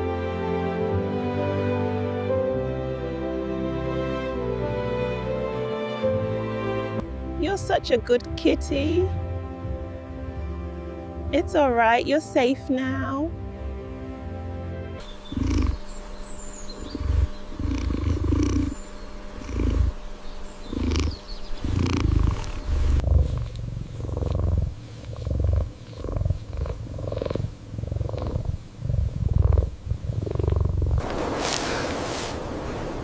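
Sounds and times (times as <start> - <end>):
cat purring: 15.0 - 31.1.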